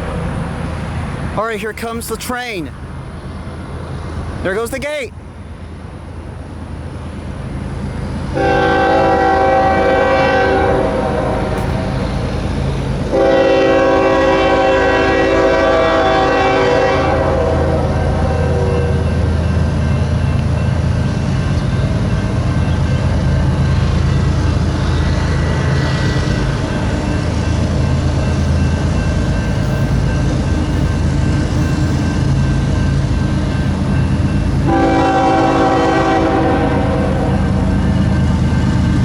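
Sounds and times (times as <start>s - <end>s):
diesel locomotives running: 0.0s - 39.0s
train air horn chord: 8.4s - 12.0s, 13.1s - 19.0s, 34.6s - 37.6s.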